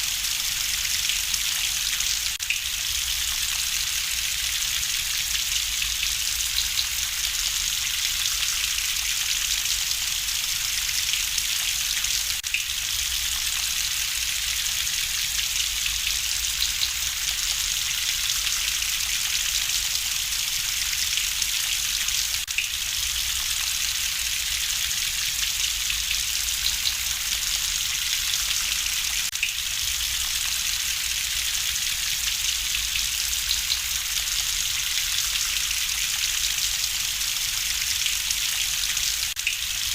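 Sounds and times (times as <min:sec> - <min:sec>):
steady rain hiss: 0:13.0 - 0:22.2.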